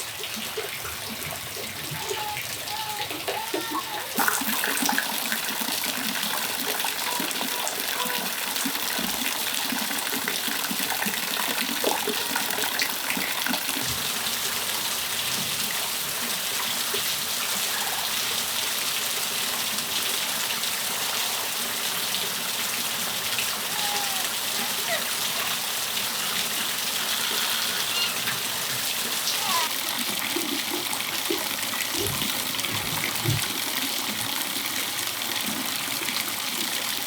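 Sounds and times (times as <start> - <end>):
rain falling and splashing: 0.0 - 37.0.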